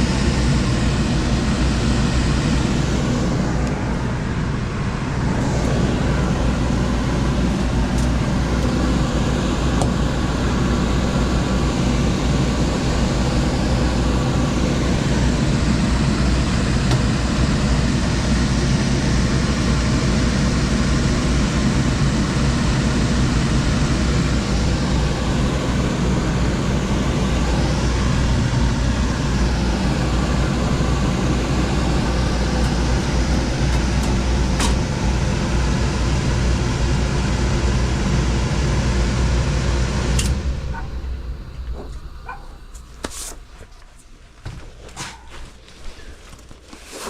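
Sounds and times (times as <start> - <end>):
machine humming: 0.0 - 44.6.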